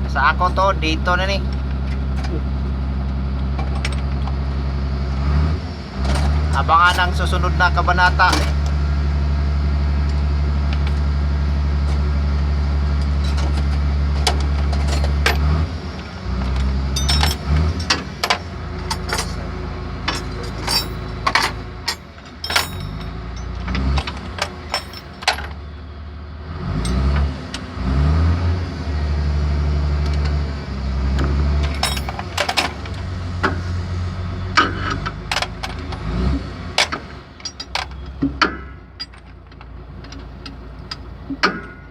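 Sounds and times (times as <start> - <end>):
engine running: 0.0 - 41.9
sharp metallic clinks: 16.9 - 19.4, 20.1 - 23.7, 31.7 - 32.3.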